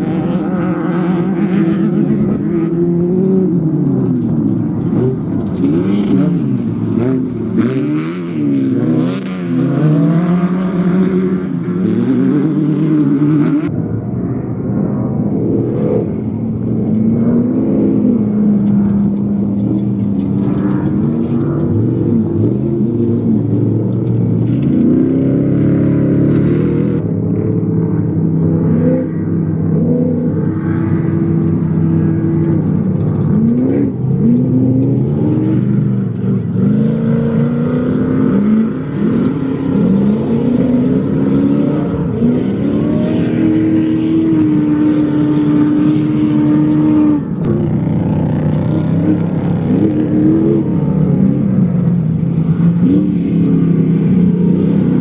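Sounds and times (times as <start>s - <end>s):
race vehicle engines revving: 0.0s - 55.0s.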